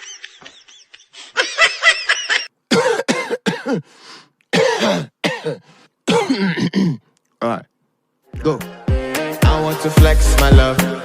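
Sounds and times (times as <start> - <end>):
person coughing: 2.7 - 3.9, 4.5 - 7.1.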